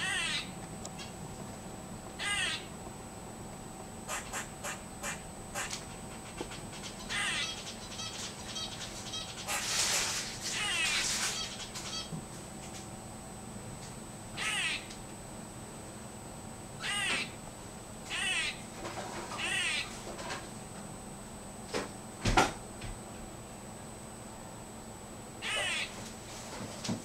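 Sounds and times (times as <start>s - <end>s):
squirrel wavering calls: 0.0s - 0.6s, 2.2s - 2.7s, 4.1s - 12.2s, 14.3s - 14.9s, 16.8s - 17.4s, 18.0s - 18.7s, 19.3s - 20.0s, 25.4s - 26.0s.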